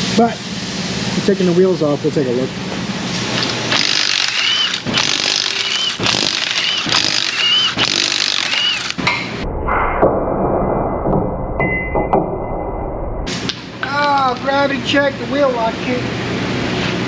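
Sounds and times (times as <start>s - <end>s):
impact wrench hammering: 3.4s - 9.3s.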